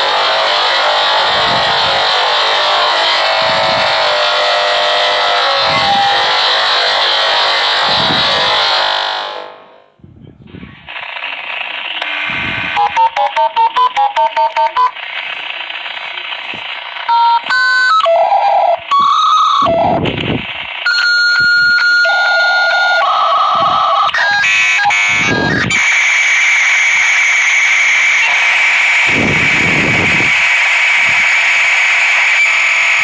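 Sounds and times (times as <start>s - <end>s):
steady modem hiss: 0.0s - 9.8s
touch-tone digits dialled: 12.8s - 15.0s, 17.1s - 19.8s
dial tone: 20.9s - 25.4s.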